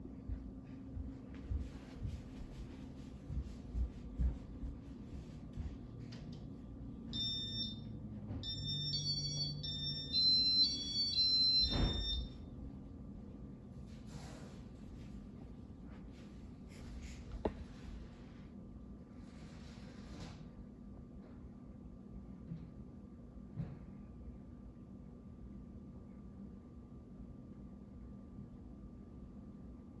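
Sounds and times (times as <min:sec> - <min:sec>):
ceiling fan humming: 0:00.0 - 0:30.0
ceiling fan electronic chimes: 0:07.1 - 0:12.6.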